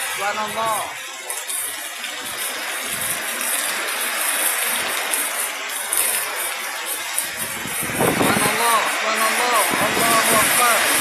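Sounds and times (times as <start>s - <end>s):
strong wind: 0.0s - 1.0s, 7.2s - 11.0s
heavy rain pouring: 0.0s - 11.0s.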